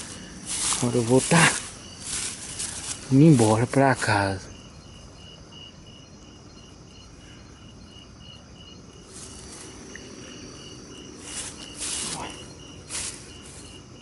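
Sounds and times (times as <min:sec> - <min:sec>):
rustling: 0:00.0 - 0:03.7, 0:11.2 - 0:13.9
cricket chirping: 0:00.0 - 0:14.0
night insects hissing: 0:00.0 - 0:14.0.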